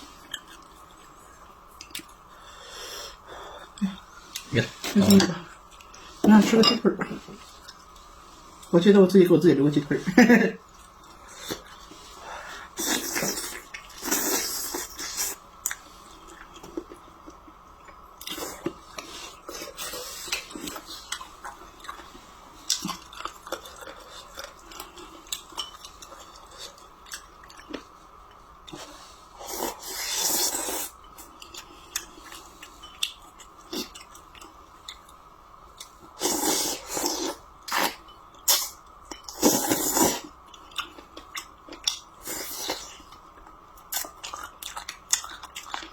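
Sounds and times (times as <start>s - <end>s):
faint steady hum: 0.0s - 45.9s
chewing and biting food: 43.8s - 45.9s.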